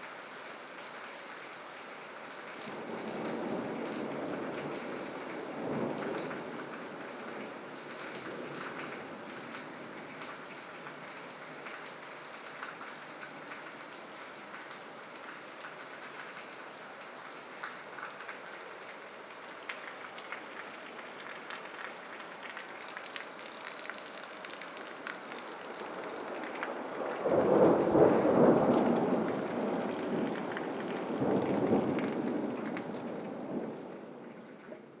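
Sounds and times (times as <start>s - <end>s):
raindrops ticking on surfaces: 0.0s - 35.0s
steady rain: 0.0s - 35.0s
thunder rumble: 23.5s - 35.0s.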